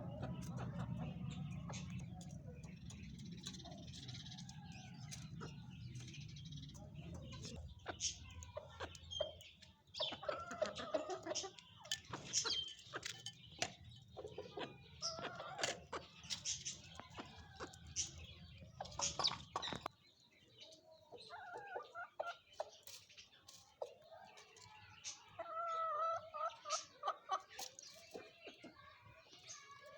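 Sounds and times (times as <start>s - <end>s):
chickens clucking and calling: 0.0s - 29.9s.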